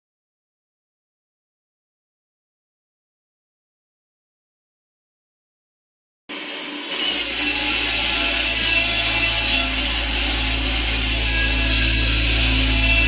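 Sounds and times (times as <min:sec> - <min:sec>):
low electrical hum from welder: 0:06.3 - 0:13.0
welding arc sizzling crackle: 0:06.3 - 0:13.0.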